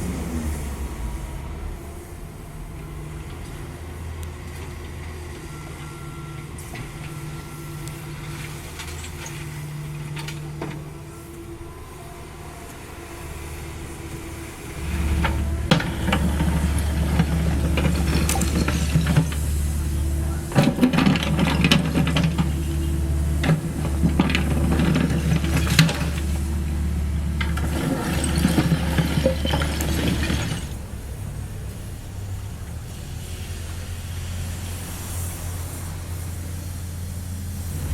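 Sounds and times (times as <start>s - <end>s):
excavator diesel engine working: 0.0s - 37.9s
rubble clattering against bucket: 15.2s - 19.7s, 20.4s - 26.5s, 27.4s - 30.8s.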